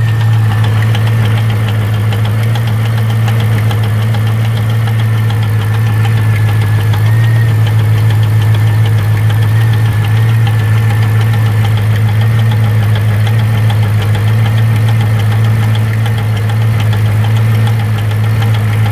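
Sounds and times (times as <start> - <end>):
car engine running: 0.0 - 18.9
engine ticking knock: 0.0 - 18.9.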